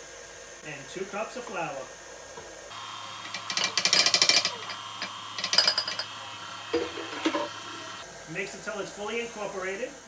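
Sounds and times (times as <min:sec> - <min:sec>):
electric mixer running: 0:02.7 - 0:08.0.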